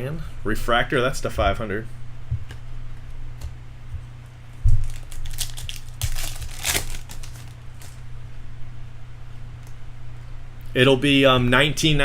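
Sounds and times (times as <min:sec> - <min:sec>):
steady low hum: 0:00.0 - 0:12.0
foil wrapper crinkling and tearing: 0:04.8 - 0:08.0.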